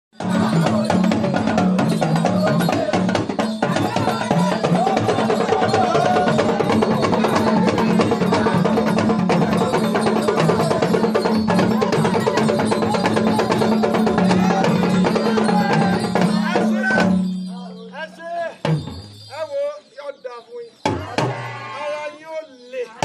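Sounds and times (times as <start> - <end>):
fast drum rhythm: 0.2 - 17.4.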